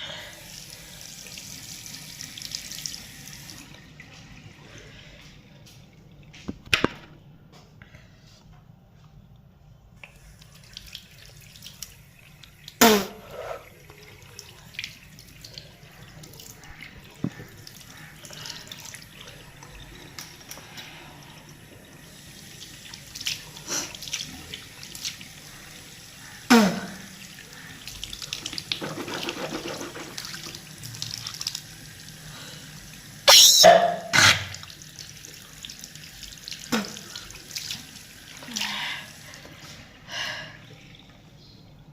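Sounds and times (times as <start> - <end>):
water splashes and drips: 10.0 - 33.5, 34.4 - 41.3
tap water running into sink: 27.8 - 32.2.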